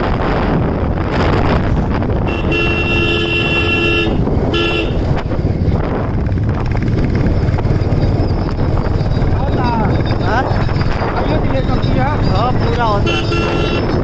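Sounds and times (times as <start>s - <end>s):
motorcycle engine running: 0.0s - 14.0s
road and wind noise: 0.0s - 14.0s
two-tone vehicle horn: 2.2s - 5.1s, 13.0s - 14.0s.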